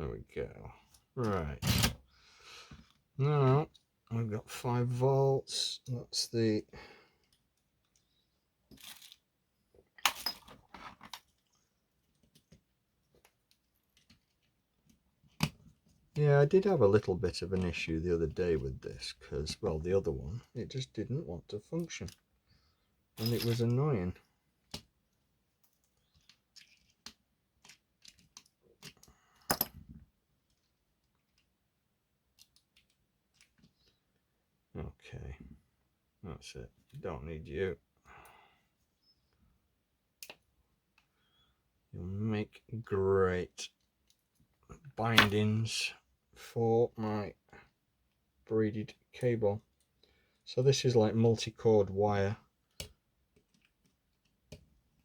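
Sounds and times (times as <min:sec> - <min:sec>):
small parts and tools clicking: 0:25.6 - 0:31.6, 0:32.3 - 0:34.0, 0:52.6 - 0:55.0.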